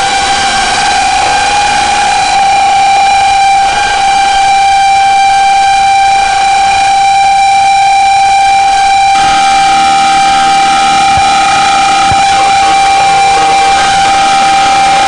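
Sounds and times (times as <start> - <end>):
droning tone: 0.0 - 15.0.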